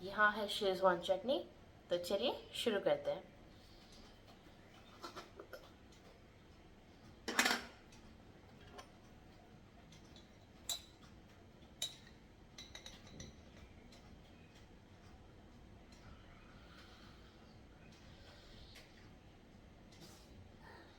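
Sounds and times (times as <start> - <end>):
utensil clinking against dish: 10.2 - 11.1, 11.8 - 13.6.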